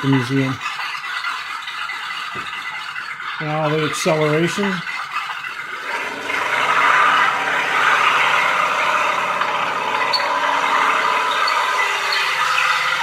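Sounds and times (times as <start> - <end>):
tank engine through small speaker: 5.7 - 13.0.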